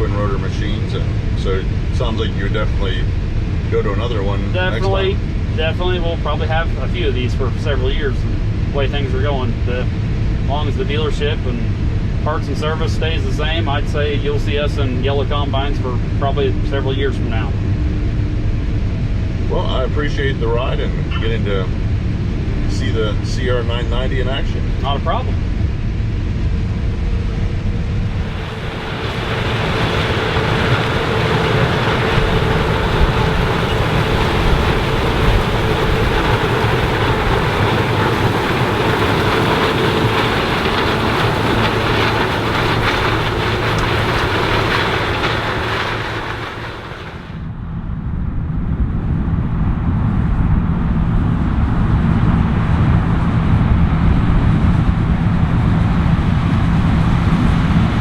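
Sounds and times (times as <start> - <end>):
combine harvester running: 0.0 - 47.6.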